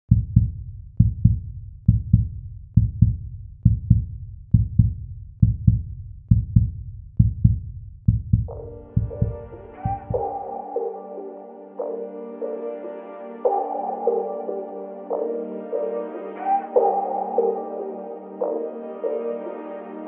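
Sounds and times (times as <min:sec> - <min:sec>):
heartbeat-like electronic beat: 0:00.1 - 0:11.0
sustained melodic tones: 0:08.5 - 0:20.0.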